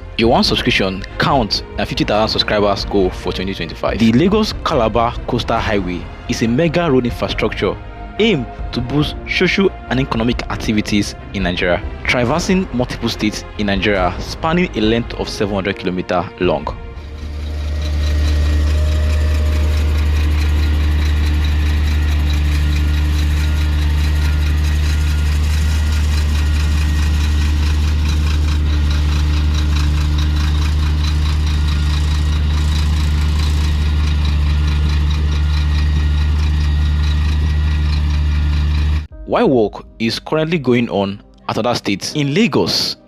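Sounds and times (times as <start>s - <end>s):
heavy engine idling: 16.9s - 39.1s.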